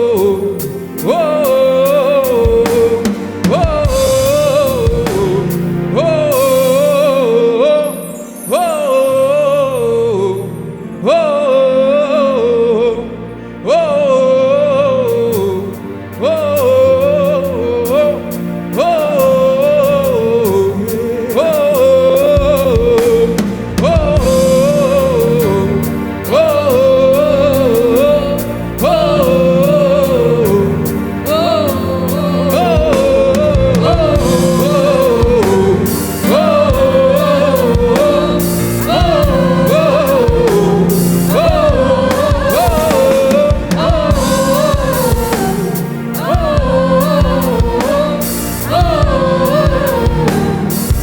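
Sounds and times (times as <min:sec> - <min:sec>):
bass: 0:00.0 - 0:51.0
person singing wordless notes: 0:00.0 - 0:51.0
sustained accompaniment chords: 0:00.0 - 0:51.0
drum beats: 0:01.9 - 0:07.2, 0:21.3 - 0:28.2, 0:29.2 - 0:51.0.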